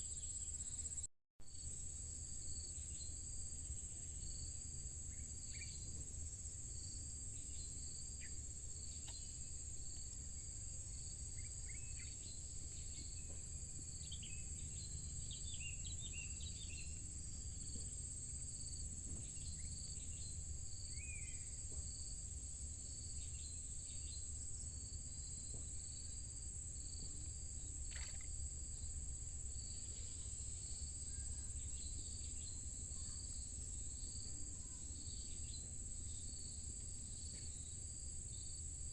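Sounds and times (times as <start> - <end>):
high-pitched insect chorus: 22.8 - 36.6
faint chirps: 27.8 - 28.4, 29.6 - 36.2
insect repeating short call: 27.8 - 28.6.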